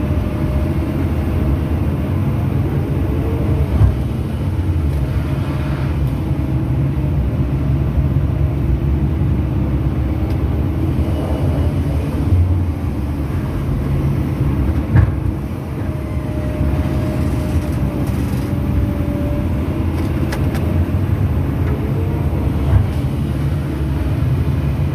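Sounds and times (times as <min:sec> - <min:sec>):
excavator diesel engine running: 0:00.0 - 0:24.9.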